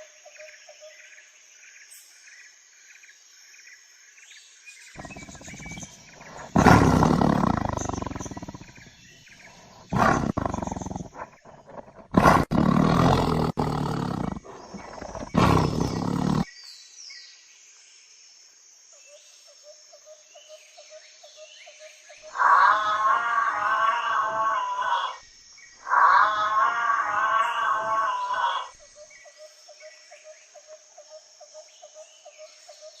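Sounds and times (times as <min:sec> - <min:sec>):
faint bird calls: 0:05.0 - 0:16.5, 0:25.8 - 0:29.4
wild animal roaring: 0:05.0 - 0:16.5, 0:22.3 - 0:25.2, 0:25.8 - 0:28.7.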